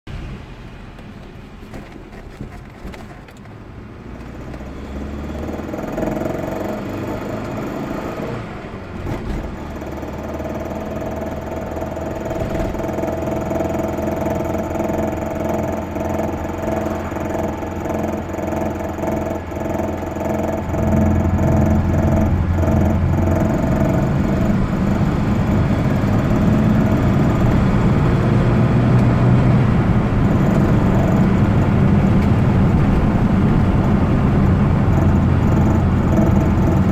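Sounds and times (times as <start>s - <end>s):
car engine revving: 4.0s - 36.9s.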